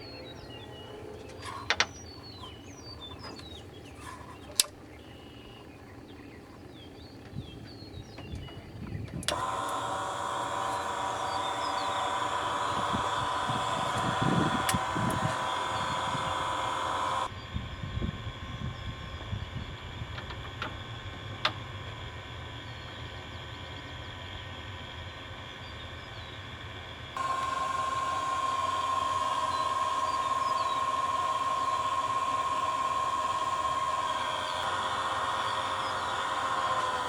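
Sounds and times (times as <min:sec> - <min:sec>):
mechanical hum with high whine: 0:00.0 - 0:37.0
sharp clicks: 0:09.1 - 0:17.3.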